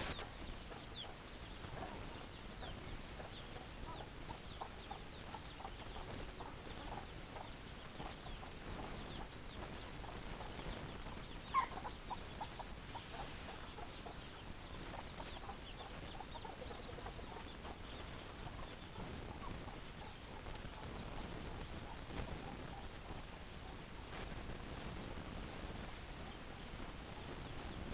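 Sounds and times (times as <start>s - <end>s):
hens clucking: 10.0s - 22.9s.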